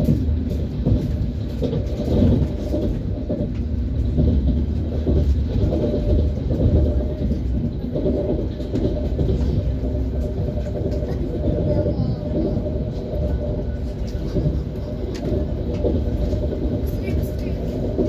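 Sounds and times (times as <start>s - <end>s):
train wheels rumbling on rails: 0.0s - 18.0s.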